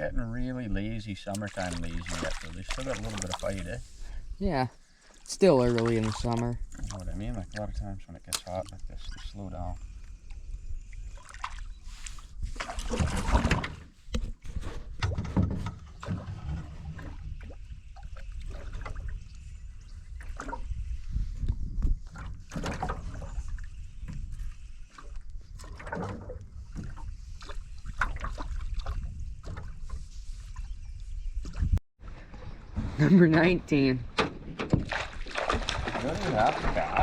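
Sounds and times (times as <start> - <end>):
water sloshing against canoe hull: 1.3 - 4.2, 4.8 - 7.7, 10.9 - 37.0
knocks and bumps in boat: 12.6 - 17.2, 22.0 - 23.3, 25.6 - 27.1, 31.4 - 37.0.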